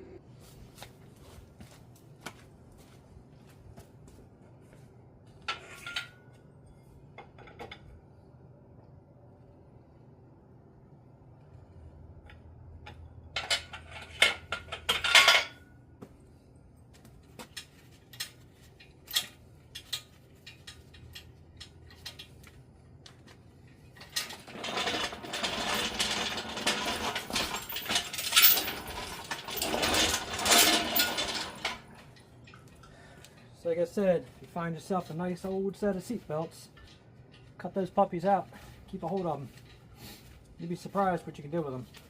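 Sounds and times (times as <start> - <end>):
metal carabiners clinking: 23.6 - 33.4.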